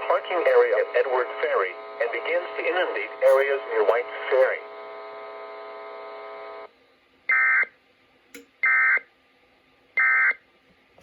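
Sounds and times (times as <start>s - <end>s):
steady buzzing tone: 0.0s - 6.7s.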